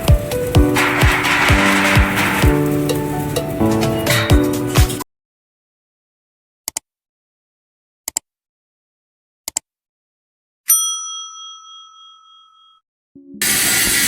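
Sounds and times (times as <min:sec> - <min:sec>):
bright bell ding: 0:10.7 - 0:12.8.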